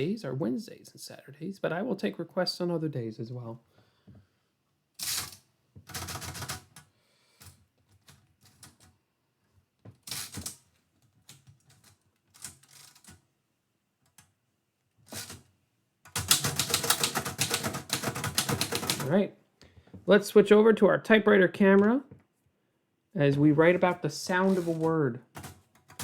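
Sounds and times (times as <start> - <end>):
typewriter keys clacking: 16.1 - 19.1, 23.8 - 26.0.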